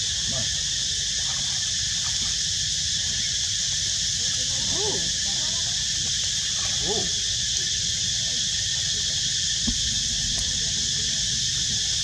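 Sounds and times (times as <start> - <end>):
insects buzzing: 0.0 - 12.0
low rumble: 9.6 - 12.0.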